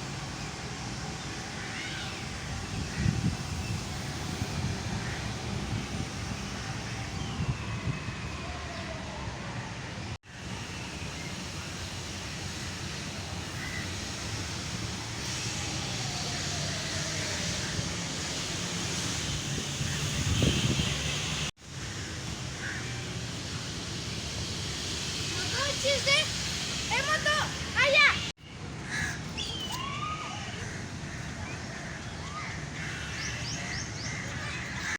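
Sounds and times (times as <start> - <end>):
wind buffeting microphone: 2.3 - 8.7, 14.4 - 21.5.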